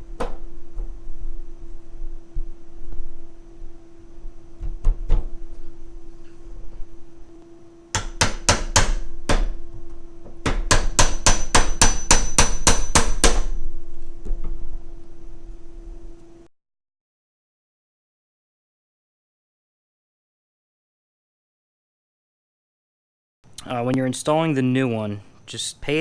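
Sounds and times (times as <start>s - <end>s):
metal-on-metal tapping: 10.4s - 13.5s.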